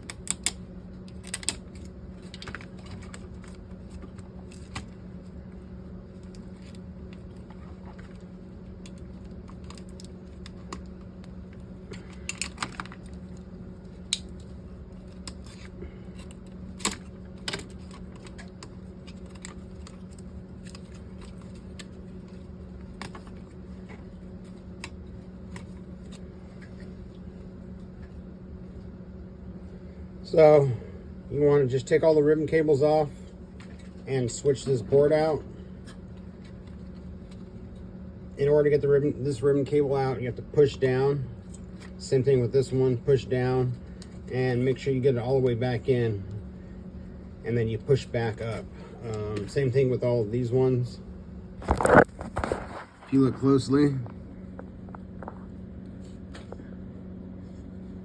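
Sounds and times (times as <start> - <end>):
steady low hum: 0.0 - 58.0.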